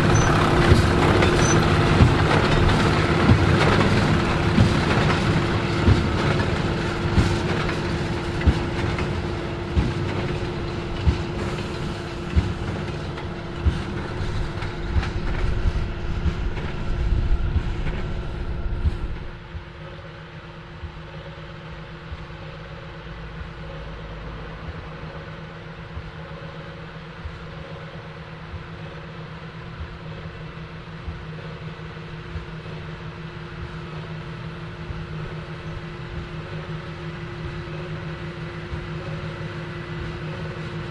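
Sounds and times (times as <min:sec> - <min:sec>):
tractor engine under load: 0:00.0 - 0:19.4.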